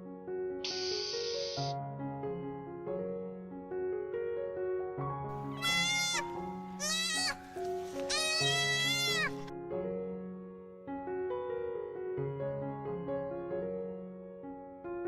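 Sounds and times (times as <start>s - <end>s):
soft piano music: 0.0s - 15.0s
animal wavering cry: 5.5s - 9.5s.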